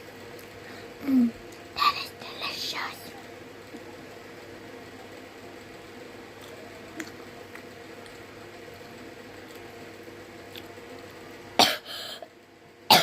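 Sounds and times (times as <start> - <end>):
steady background hum: 0.0 - 13.0
person coughing: 11.6 - 12.2.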